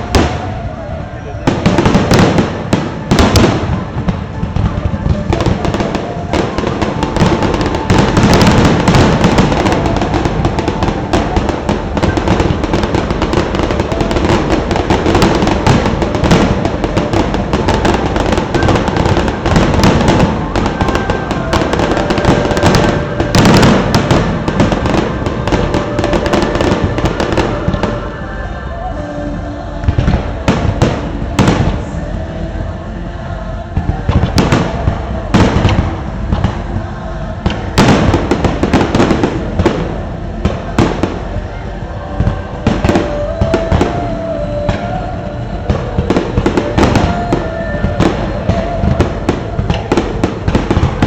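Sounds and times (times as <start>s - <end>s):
fireworks bangs and crackles: 0.0s - 28.6s, 29.8s - 51.0s
music soundtrack: 0.0s - 51.0s.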